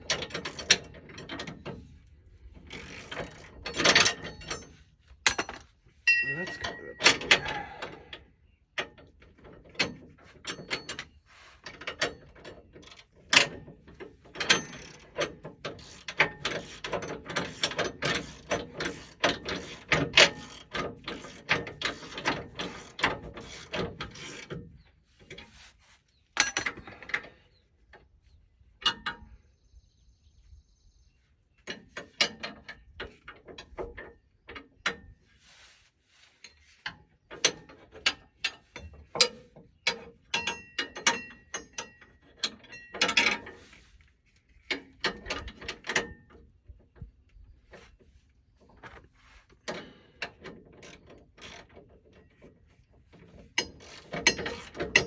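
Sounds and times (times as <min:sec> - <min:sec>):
ratchet wrench clicking: 0:50.8 - 0:51.7, 0:53.6 - 0:55.0.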